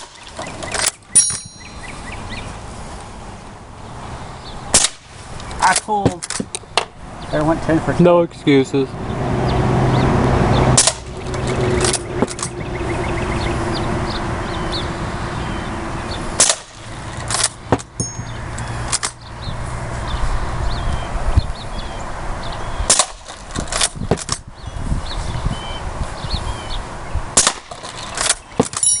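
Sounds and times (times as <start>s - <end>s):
bb rifle firing sharp pops: 4.8s - 5.1s, 16.4s - 16.8s, 27.4s - 27.8s.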